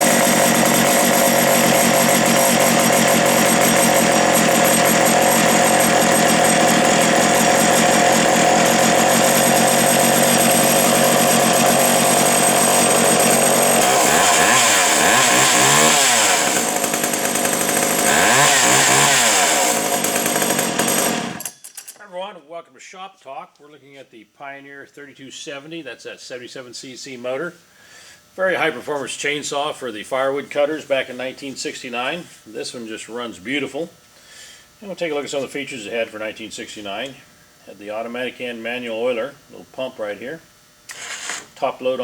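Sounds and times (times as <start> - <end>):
chainsaw running at high speed: 0.0 - 21.5, 40.9 - 41.6.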